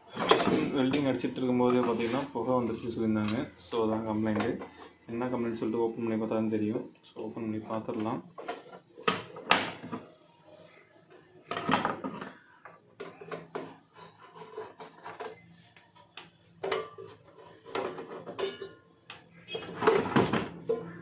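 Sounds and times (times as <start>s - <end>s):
metal casing knocks and clatters: 16.6s - 18.8s.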